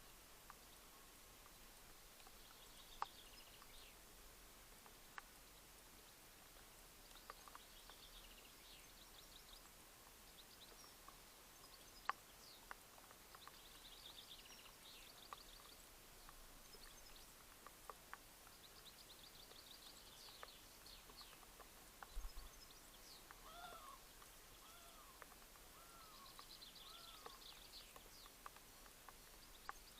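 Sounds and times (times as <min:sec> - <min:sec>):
faint songbirds singing: 0:00.0 - 0:29.9
small clicks: 0:10.6 - 0:29.9.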